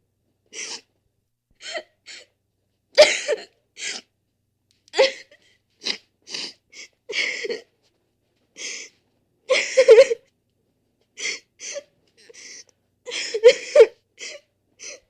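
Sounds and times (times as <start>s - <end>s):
person sobbing: 11.2s - 15.0s.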